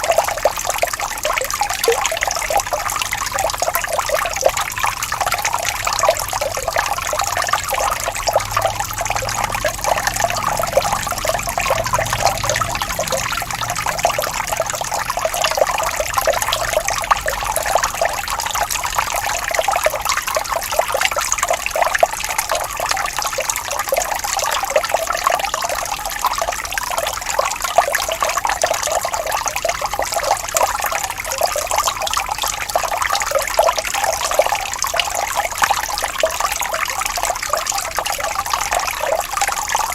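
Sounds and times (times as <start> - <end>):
falling water splashing: 0.0 - 39.9.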